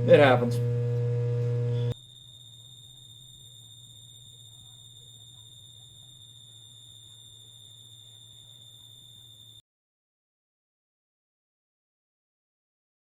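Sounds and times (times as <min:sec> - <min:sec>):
low hum: 0:00.0 - 0:02.0
faint high-pitched electrical whine: 0:00.0 - 0:09.6.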